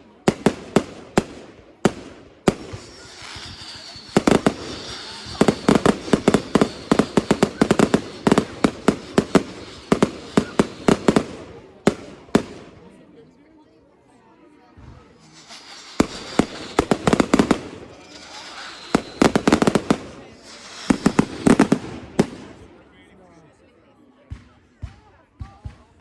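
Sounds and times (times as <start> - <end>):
fireworks bangs: 0.0 - 13.0, 15.2 - 22.9
fireworks crackling hiss: 0.0 - 13.1, 14.8 - 23.0.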